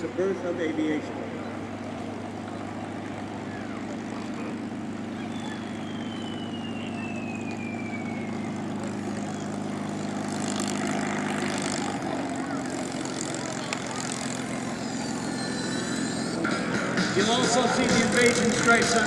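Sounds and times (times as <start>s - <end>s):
propeller airplane engine droning: 0.0s - 19.0s
faint high gliding tone: 12.5s - 16.5s.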